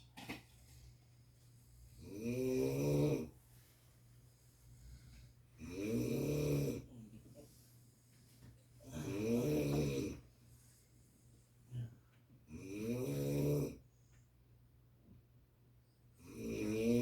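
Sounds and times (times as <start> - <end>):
person snoring: 2.0 - 3.3, 5.6 - 7.0, 8.8 - 10.2, 12.6 - 13.8, 16.2 - 17.0.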